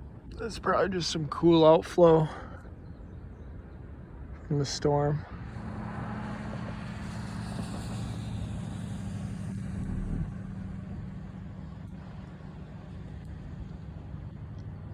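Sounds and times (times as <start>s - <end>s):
vehicle engine humming: 5.4s - 14.9s.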